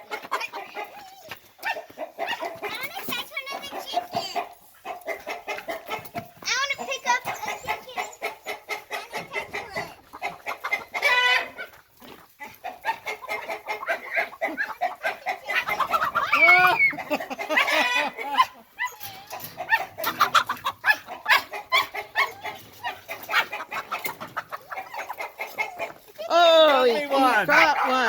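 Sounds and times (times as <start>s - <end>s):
chickens clucking: 0.0s - 28.0s
chickens squawking: 0.0s - 28.0s.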